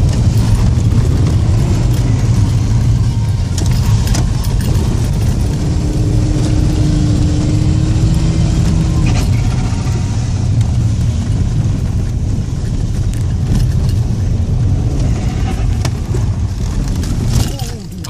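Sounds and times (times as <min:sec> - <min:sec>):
diesel engine drone: 0:00.0 - 0:18.0
light clicks and rattles: 0:16.6 - 0:18.0.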